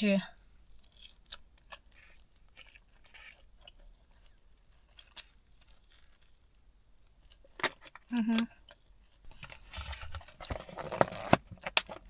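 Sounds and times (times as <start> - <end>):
person chewing: 0.4 - 9.4.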